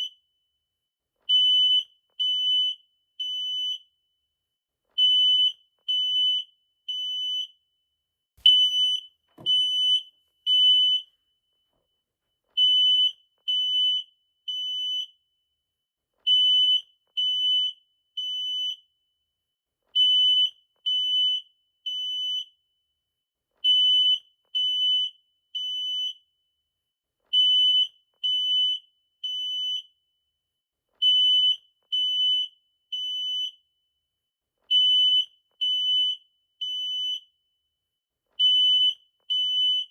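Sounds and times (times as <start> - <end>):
smoke alarm beeping: 5.0 - 7.6, 8.4 - 11.2, 16.3 - 18.8, 20.0 - 22.5, 23.7 - 26.2, 27.4 - 29.9, 34.7 - 37.3, 38.4 - 39.9.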